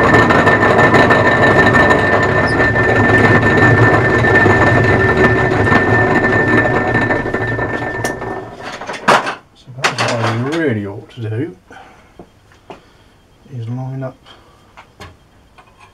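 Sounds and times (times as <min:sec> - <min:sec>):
metalworking lathe running: 0:00.0 - 0:10.6
steady high whine: 0:00.0 - 0:15.9.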